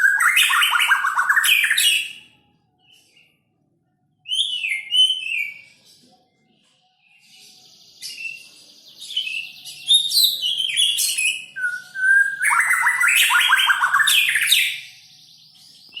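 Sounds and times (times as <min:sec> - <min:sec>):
bird singing whistles and trills: 0:00.0 - 0:03.3, 0:04.2 - 0:05.8, 0:07.1 - 0:16.0.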